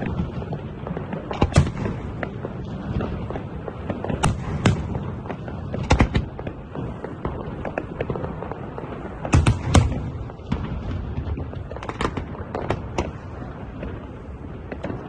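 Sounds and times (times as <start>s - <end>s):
firework shells bursting: 0.0s - 8.4s, 9.1s - 14.0s
fireworks crackle and rumble: 0.0s - 15.0s.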